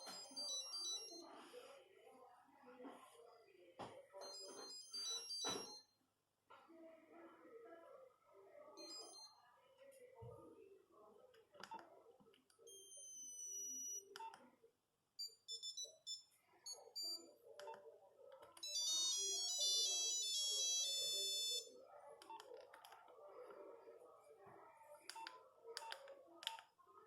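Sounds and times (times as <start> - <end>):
monophonic phone ringtones: 0.0 - 1.3, 4.2 - 5.9, 8.8 - 9.3, 12.7 - 14.1, 15.2 - 17.3, 18.6 - 21.8.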